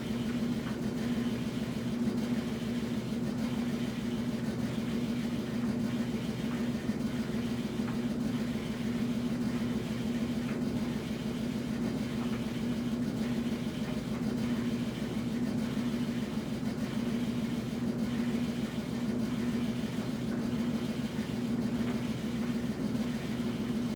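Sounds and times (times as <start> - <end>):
washing machine running: 0.0 - 23.9.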